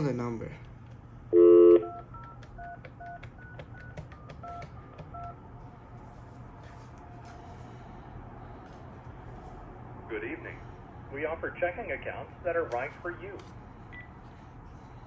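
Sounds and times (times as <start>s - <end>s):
touch-tone dialing beeps: 1.4s - 5.4s.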